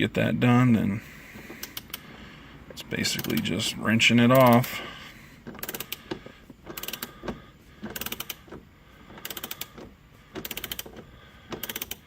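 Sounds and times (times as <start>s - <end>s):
socket ratchet clicking: 1.5s - 2.0s, 5.4s - 12.0s.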